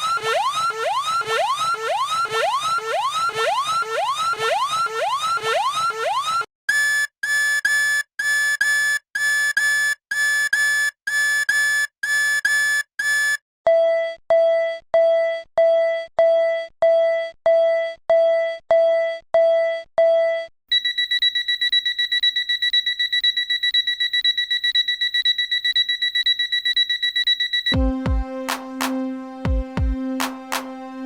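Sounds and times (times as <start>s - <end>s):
fast ringing alarm: 20.7s - 27.8s.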